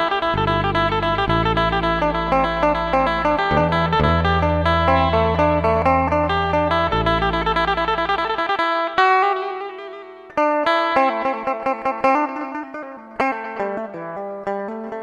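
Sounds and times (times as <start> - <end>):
plucked string instrument: 0.0 - 15.0
deep bass line: 0.2 - 8.4.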